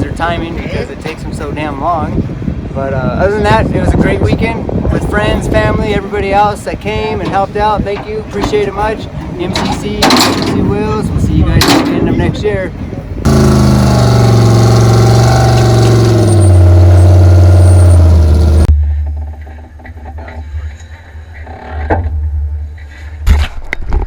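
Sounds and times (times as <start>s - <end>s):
truck engine running hard: 13.3s - 18.7s.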